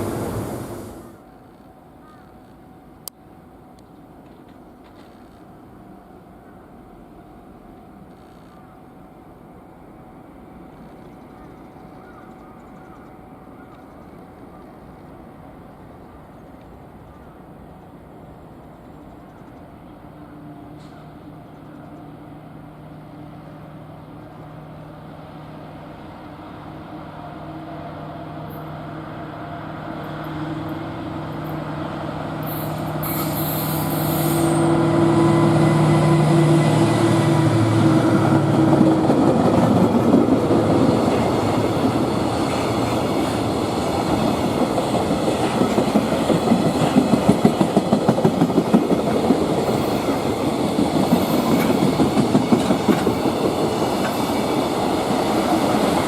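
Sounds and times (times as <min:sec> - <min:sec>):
locomotive hum: 0:00.0 - 0:01.6, 0:02.5 - 0:56.0
wheels clacking over rail joints: 0:38.4 - 0:56.0.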